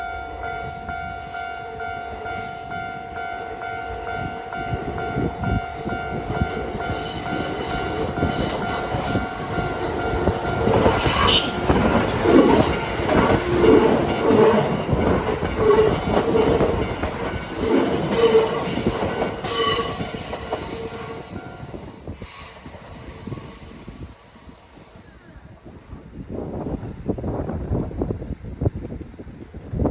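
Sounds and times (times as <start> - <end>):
train horn: 0.0 - 12.0, 17.6 - 21.8
train wheels clattering and squealing: 6.0 - 25.6.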